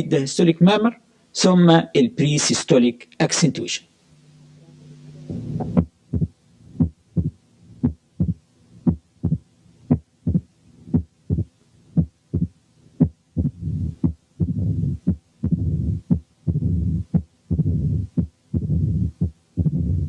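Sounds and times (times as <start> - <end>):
low hum: 4.0 - 20.0
heartbeat lub-dub: 5.3 - 20.0.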